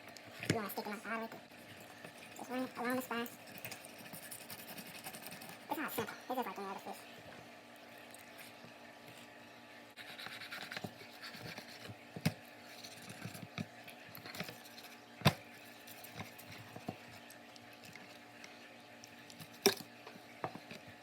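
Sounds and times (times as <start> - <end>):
knife scraping along fish backbone: 3.2 - 5.7, 10.0 - 12.0.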